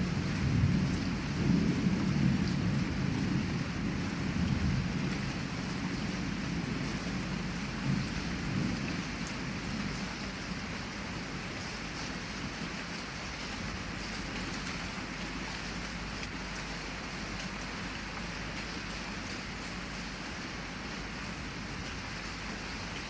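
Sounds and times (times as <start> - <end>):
thunder rumble: 0.0 - 10.0
heavy rain on a window: 0.0 - 23.0.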